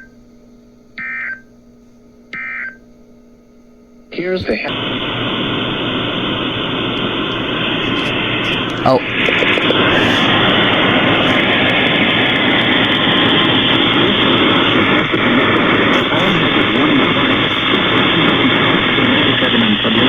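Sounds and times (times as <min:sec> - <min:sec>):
faint broadcast voice: 0:04.1 - 0:05.2, 0:07.0 - 0:12.4, 0:13.4 - 0:20.0
radio static: 0:04.1 - 0:20.0.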